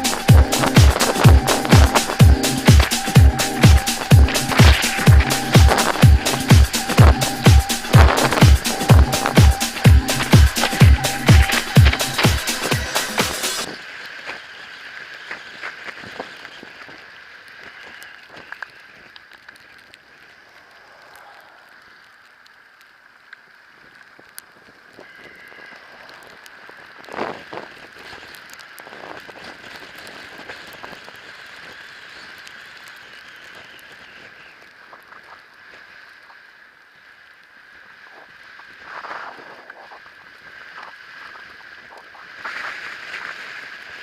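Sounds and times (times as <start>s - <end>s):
thin steady whine: 0.0s - 17.2s
hiss of tyres and wind: 13.4s - 44.0s.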